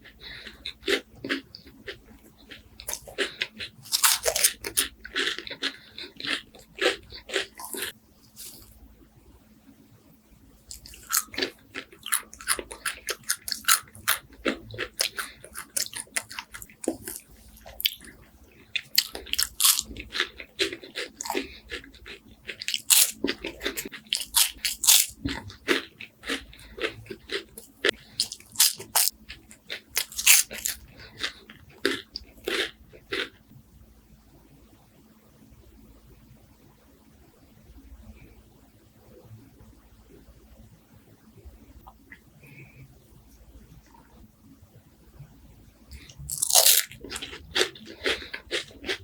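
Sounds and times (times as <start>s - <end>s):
crunchy chewing: 0.0s - 8.8s, 10.7s - 33.4s, 45.9s - 49.0s.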